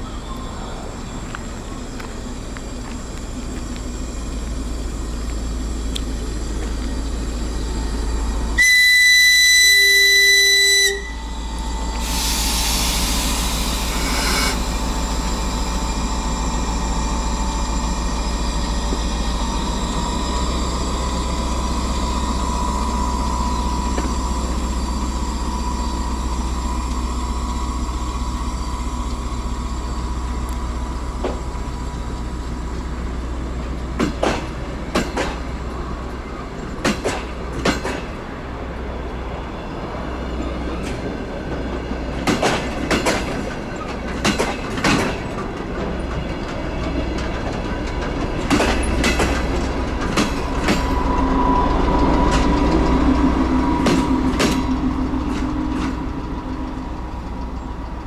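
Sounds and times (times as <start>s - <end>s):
diesel railcar running: 0.0s - 58.0s
train whistle: 8.5s - 16.0s, 50.5s - 57.2s
air hiss: 11.8s - 16.0s.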